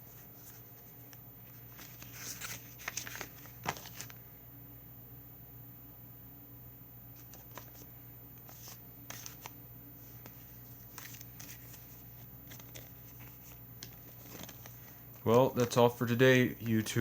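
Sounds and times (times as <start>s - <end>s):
low steady hum: 0.0s - 17.0s
packaging rustling and clicking: 1.7s - 4.2s, 10.2s - 15.9s.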